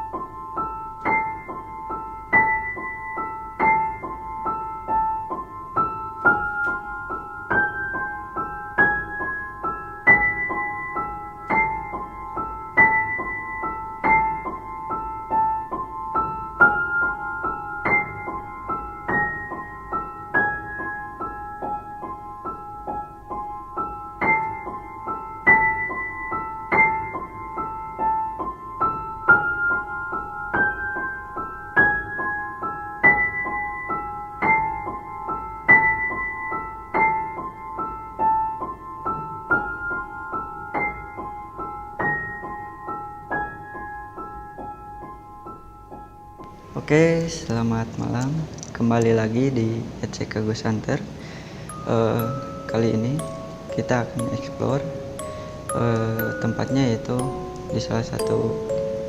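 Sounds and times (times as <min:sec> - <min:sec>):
slow piano music: 0:00.0 - 0:59.0.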